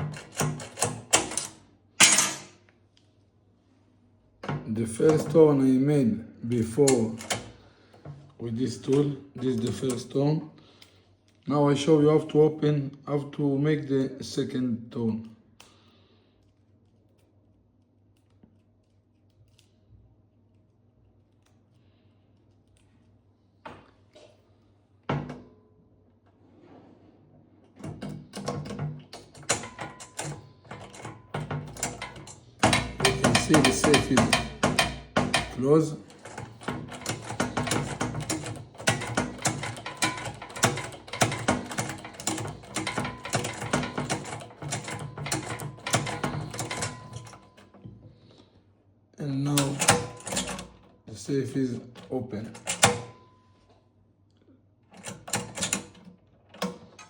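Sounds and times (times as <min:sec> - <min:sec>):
lock tool clicking in safe lock: 0:00.0 - 0:01.6, 0:06.8 - 0:07.5, 0:28.0 - 0:47.7, 0:52.5 - 0:53.2.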